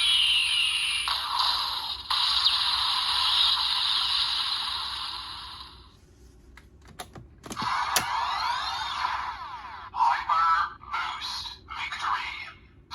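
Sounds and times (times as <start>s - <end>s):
toy electronic sound effects: 0.0s - 5.8s.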